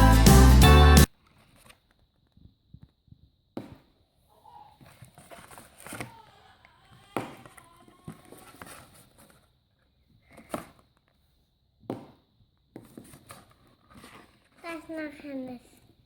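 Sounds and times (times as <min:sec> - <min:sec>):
faint voice: 0:05.9 - 0:08.6.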